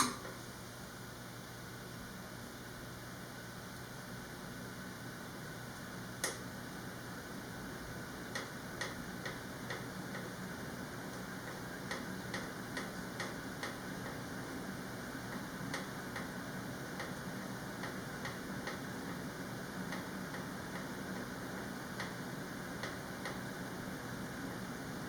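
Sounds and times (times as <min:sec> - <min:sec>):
ceiling fan humming: 0:00.0 - 0:25.0
fan ticking: 0:05.8 - 0:06.6, 0:07.7 - 0:25.0.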